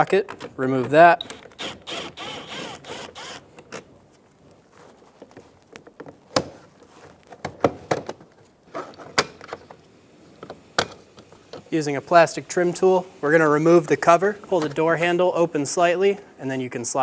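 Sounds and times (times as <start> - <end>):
hand tools clicking and knocking: 0.8 - 3.7.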